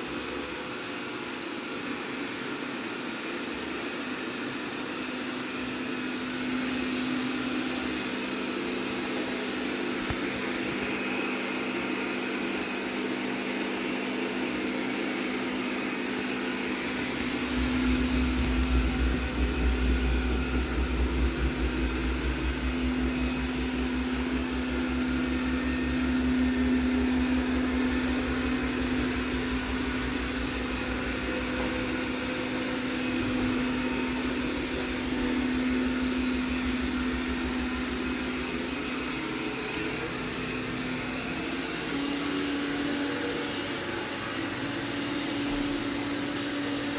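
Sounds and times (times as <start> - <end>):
robot vacuum motor hum: 16.8 - 40.9
low rumble: 17.0 - 40.9.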